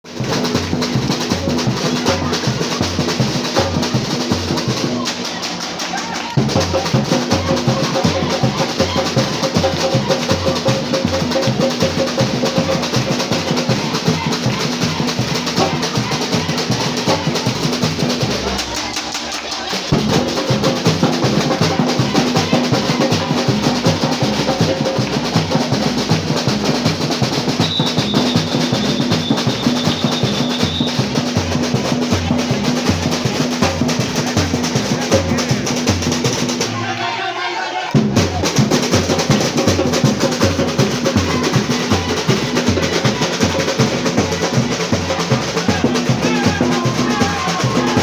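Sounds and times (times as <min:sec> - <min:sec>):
samba drums playing: 0:00.0 - 0:48.0
deep bass drums: 0:19.9 - 0:27.8.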